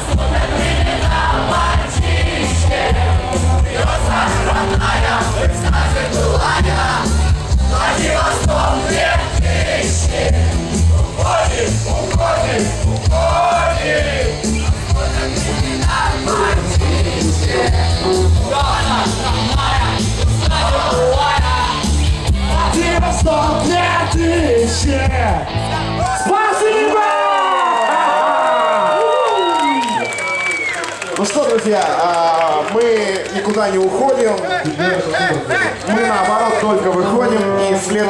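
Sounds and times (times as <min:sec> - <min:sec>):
crowd singing and yelling: 0:00.0 - 0:26.0
rock music with heavy bass: 0:00.0 - 0:26.2.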